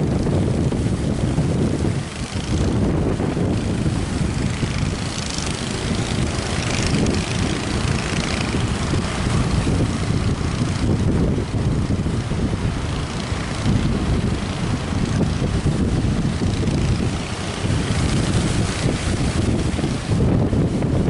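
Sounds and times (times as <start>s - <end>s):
strong wind on microphone: 0.0s - 21.0s.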